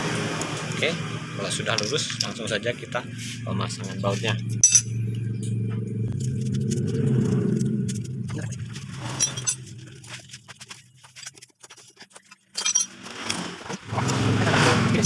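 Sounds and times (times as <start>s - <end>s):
steady low hum: 0.0s - 15.0s
metal tools and bolts clinking: 3.8s - 5.6s, 9.1s - 9.8s, 12.4s - 14.4s.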